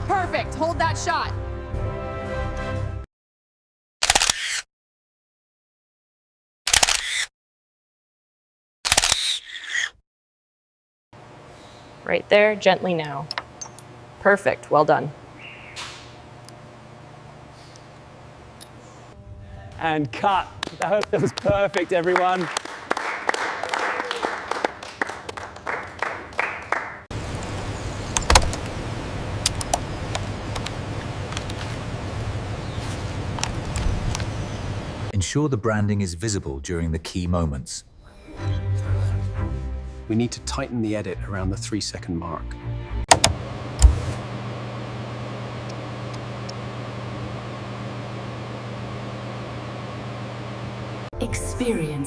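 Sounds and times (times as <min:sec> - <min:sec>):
sharp clicks: 0:08.8 - 0:09.4
ventilation fan hum: 0:11.2 - 0:35.4, 0:43.1 - 0:52.0
small group clapping: 0:20.6 - 0:27.1.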